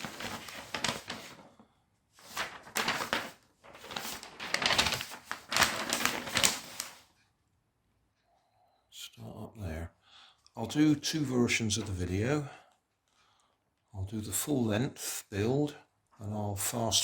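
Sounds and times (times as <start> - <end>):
plastic packaging crinkling: 0.0 - 1.5, 2.2 - 7.1.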